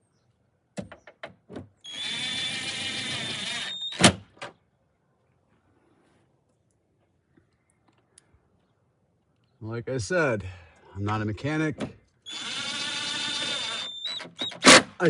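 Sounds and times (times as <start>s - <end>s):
impact driver whining: 1.9s - 4.2s, 12.3s - 14.9s.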